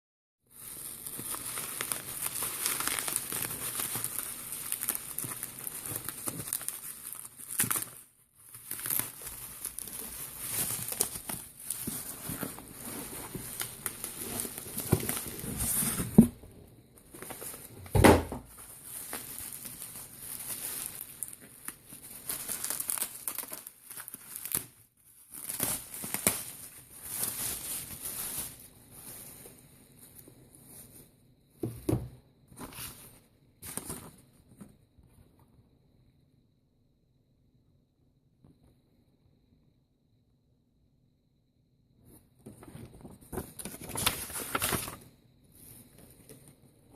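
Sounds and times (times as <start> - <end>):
packaging crinkling and tearing: 0.5 - 16.4, 17.0 - 29.3, 43.4 - 45.0.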